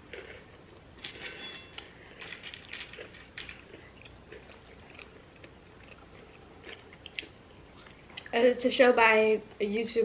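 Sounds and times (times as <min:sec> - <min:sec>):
chewing food: 0:00.0 - 0:00.6, 0:01.8 - 0:08.4
food packaging crackling: 0:00.0 - 0:08.0.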